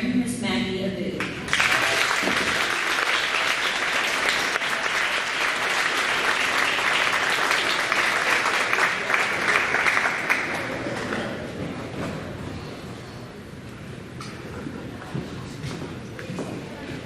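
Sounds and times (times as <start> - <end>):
audience applauding: 1.2 - 11.2.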